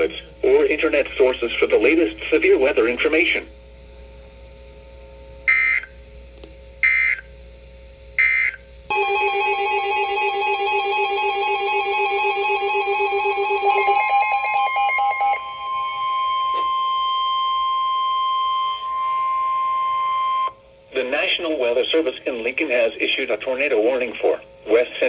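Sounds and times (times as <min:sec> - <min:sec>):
multi-tone electronic alarm: 0:08.9 - 0:20.6
steady attention tone: 0:08.9 - 0:20.6.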